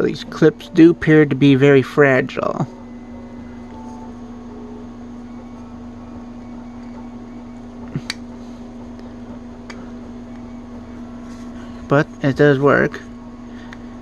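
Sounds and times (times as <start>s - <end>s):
electrical hum: 0.0s - 14.0s.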